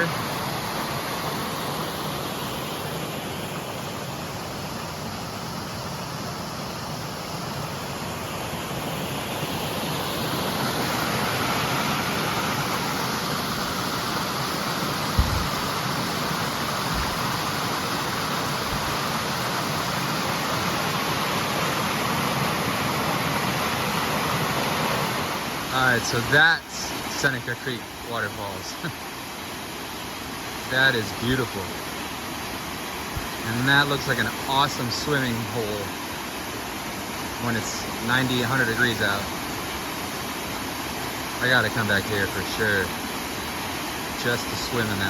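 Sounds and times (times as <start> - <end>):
waterfall rushing: 0.0 - 45.0
brief low thump: 15.2 - 15.6.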